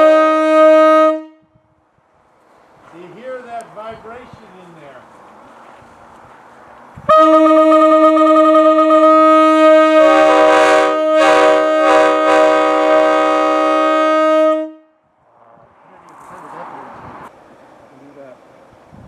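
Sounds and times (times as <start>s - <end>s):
locomotive air horn blast: 0.0s - 1.8s, 7.0s - 15.0s.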